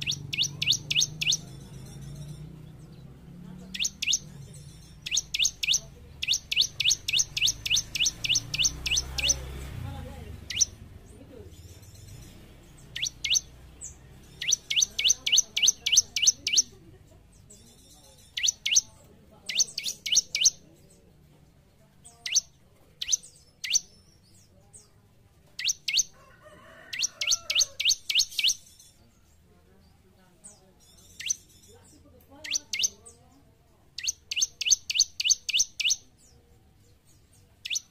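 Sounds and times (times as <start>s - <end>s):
bird singing whistled notes: 0.0s - 3.0s, 3.7s - 9.4s, 10.4s - 16.8s, 17.5s - 20.9s, 22.2s - 24.9s, 25.6s - 26.1s, 27.0s - 29.0s, 30.5s - 33.2s, 34.0s - 36.4s, 37.2s - 37.9s.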